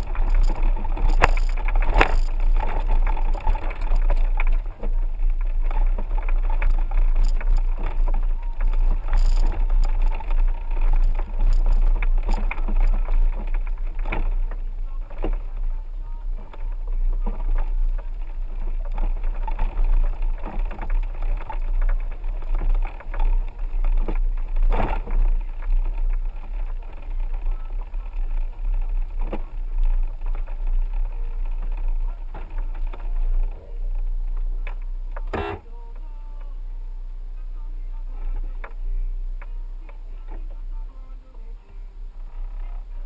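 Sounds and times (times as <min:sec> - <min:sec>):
knocks and rattles: 0:00.0 - 0:14.6
engine and road rumble: 0:00.0 - 0:43.0.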